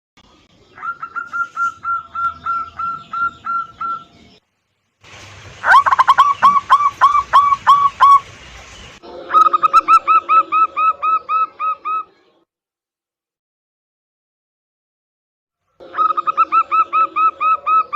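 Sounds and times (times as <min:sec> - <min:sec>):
doves cooing: 0:00.7 - 0:04.3, 0:05.6 - 0:08.3, 0:09.2 - 0:12.1, 0:15.8 - 0:17.9.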